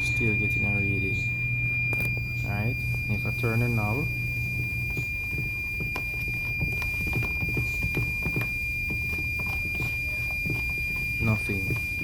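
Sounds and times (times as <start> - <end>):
multimeter continuity beep: 0.0 - 12.0.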